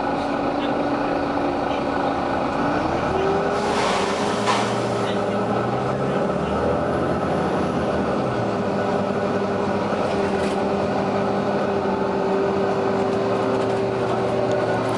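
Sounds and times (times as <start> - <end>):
bus diesel engine running: 0.0 - 14.9.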